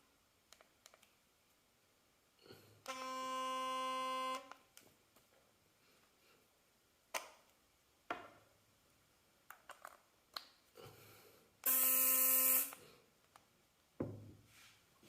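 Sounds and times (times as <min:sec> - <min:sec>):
electric toothbrush harsh buzz: 0:11.6 - 0:12.8.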